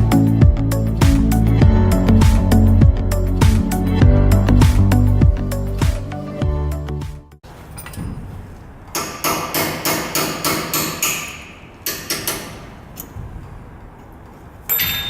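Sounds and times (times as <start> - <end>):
hammer striking metal: 8.9 - 12.8.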